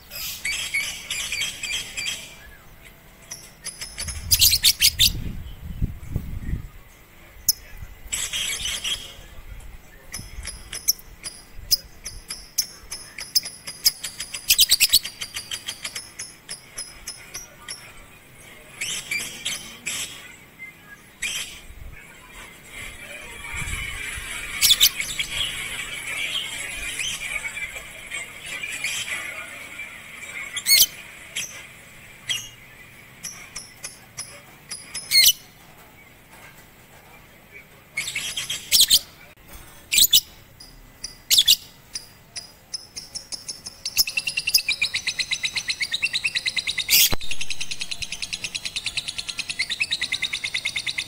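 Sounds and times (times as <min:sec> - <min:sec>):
bird chirping: 0:00.0 - 0:09.3, 0:09.9 - 0:21.7, 0:39.9 - 0:51.0
shrill bird chirps and calls: 0:00.1 - 0:05.2, 0:32.2 - 0:35.6, 0:39.9 - 0:51.0.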